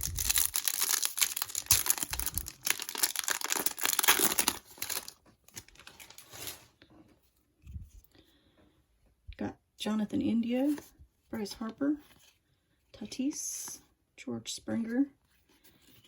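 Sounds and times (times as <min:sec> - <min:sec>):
cards rustling: 0:00.0 - 0:06.6
plastic wrapper tearing and crinkling: 0:00.0 - 0:06.6.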